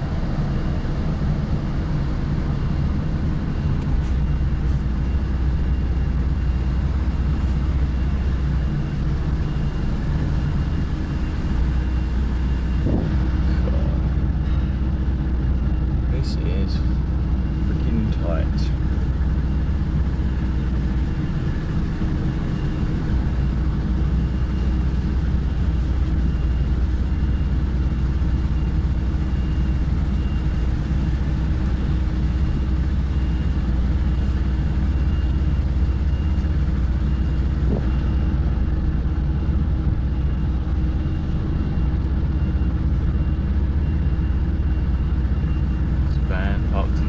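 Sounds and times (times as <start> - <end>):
diesel lorry engine running: 0.0 - 47.0
faint reversing alarm beeps: 0.0 - 47.0.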